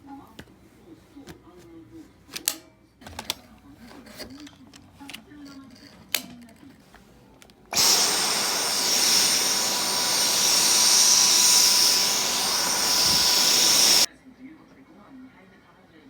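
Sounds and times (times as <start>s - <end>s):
vacuum cleaner running: 7.7s - 14.1s.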